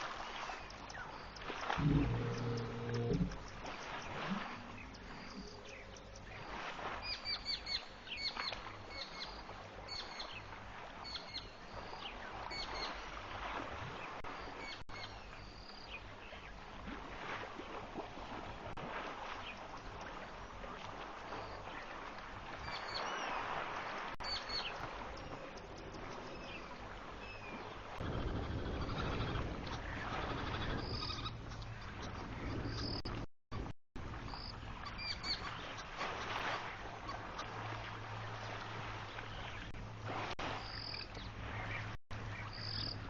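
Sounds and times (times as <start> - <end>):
steady outdoor hiss: 0.0 - 33.1
birds chirping: 0.6 - 8.4.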